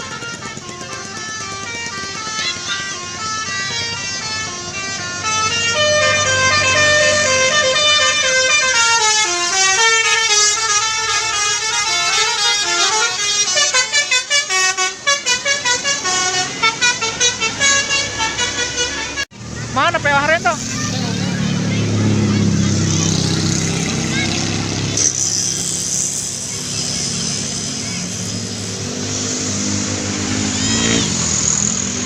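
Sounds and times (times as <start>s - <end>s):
musical bus horn: 0.0s - 19.4s.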